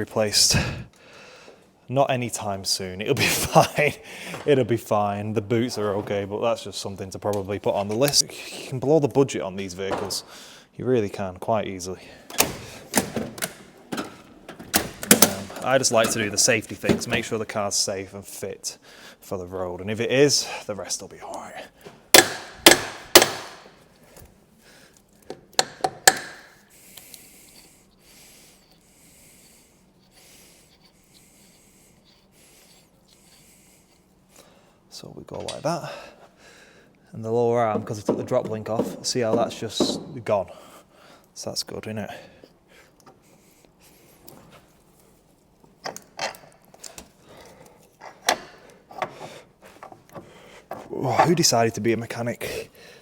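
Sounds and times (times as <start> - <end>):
hand tools knocking on metal: 25.3 - 26.5, 37.6 - 40.3
metal tools clicking and knocking: 25.3 - 26.6.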